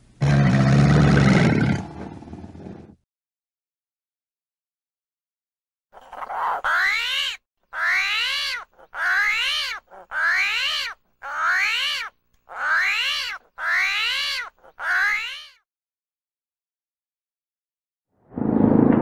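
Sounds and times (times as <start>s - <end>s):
cat meowing: 6.5s - 15.6s.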